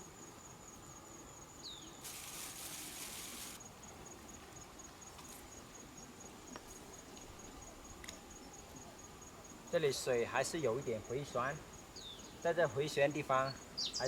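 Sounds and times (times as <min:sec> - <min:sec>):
insect chirping: 0:00.0 - 0:14.0
brief hiss of noise: 0:02.0 - 0:03.6.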